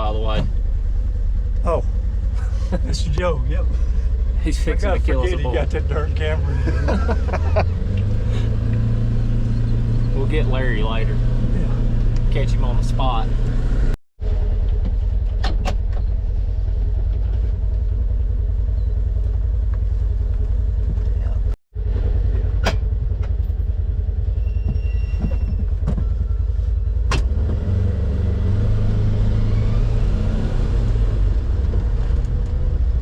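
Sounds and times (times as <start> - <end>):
vehicle rumbling over rough ground: 0.0 - 33.0.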